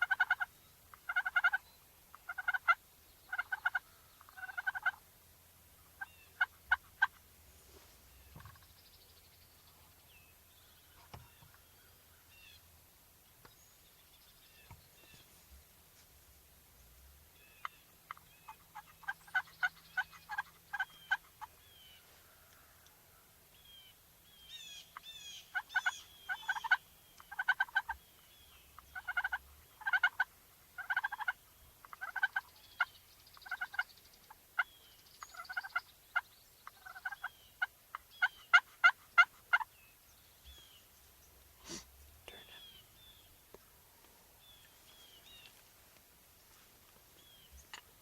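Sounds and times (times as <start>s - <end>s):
wild turkeys gobbling: 0.0s - 5.1s, 5.8s - 7.3s, 8.2s - 8.7s, 17.4s - 23.2s, 24.5s - 39.8s.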